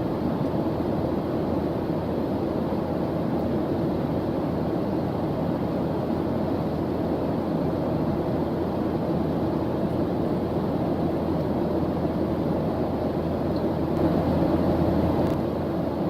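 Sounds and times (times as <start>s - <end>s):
white noise hiss: 0.0s - 16.0s.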